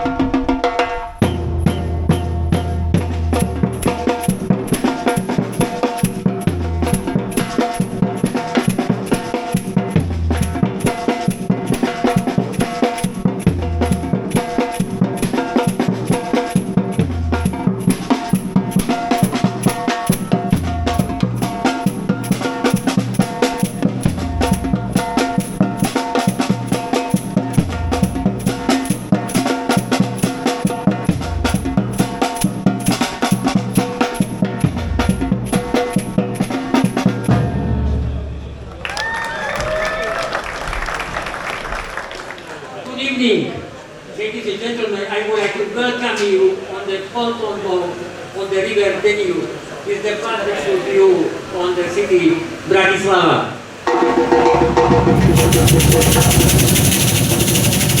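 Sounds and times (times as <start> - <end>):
percussion beat: 0.0 - 37.4, 53.8 - 58.0
deep bass note: 53.9 - 58.0.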